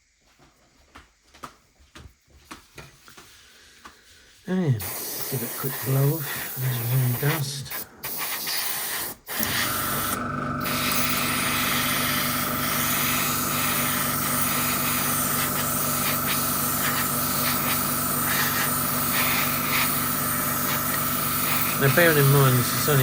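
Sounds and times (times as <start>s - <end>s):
airbrush spraying hiss: 4.3s - 10.0s, 10.6s - 23.0s
compressor humming: 4.5s - 23.0s.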